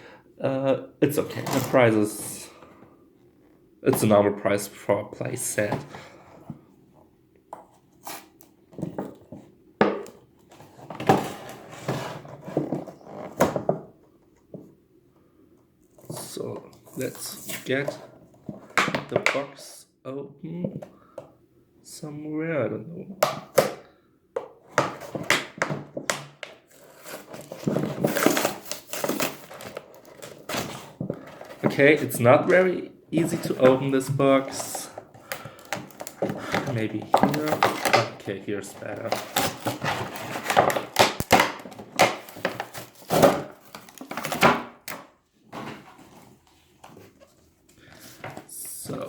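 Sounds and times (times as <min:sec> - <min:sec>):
plastic packaging crinkling: 0:26.8 - 0:44.4.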